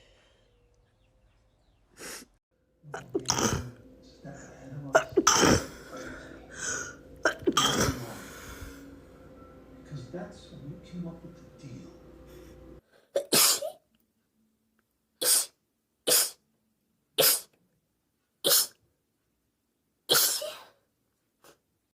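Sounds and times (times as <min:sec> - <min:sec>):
woman sneezing: 0:13.2 - 0:13.8, 0:15.2 - 0:16.4, 0:17.2 - 0:17.5, 0:18.4 - 0:18.8, 0:20.1 - 0:20.8.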